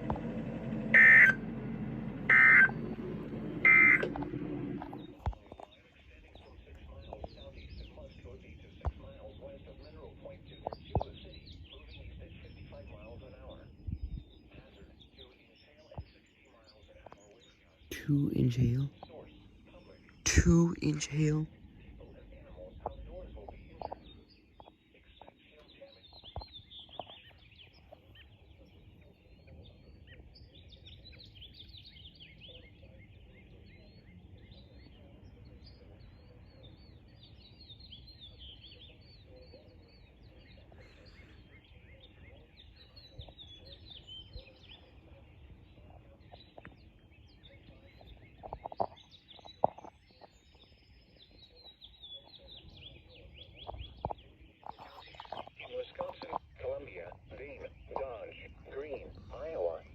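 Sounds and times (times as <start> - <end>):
steady low rumble: 0.0 - 5.4
songbirds chirping and singing: 0.0 - 59.9.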